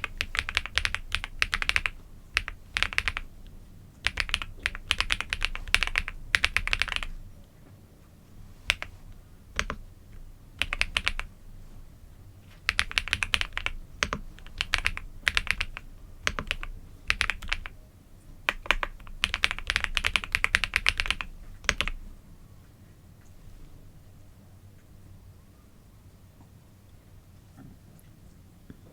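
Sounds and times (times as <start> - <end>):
typing on computer keyboard: 0.0 - 3.3, 4.0 - 7.2, 8.7 - 8.9, 9.6 - 9.9, 10.6 - 11.3, 12.5 - 17.8, 18.5 - 22.0.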